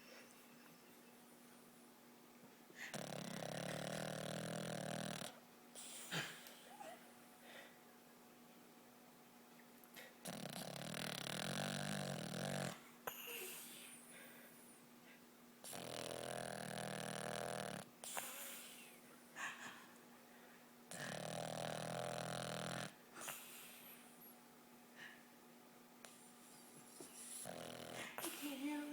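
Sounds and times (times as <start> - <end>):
dog snoring: 2.8 - 7.0, 10.0 - 14.4, 15.6 - 19.0, 20.9 - 24.3, 26.0 - 28.9.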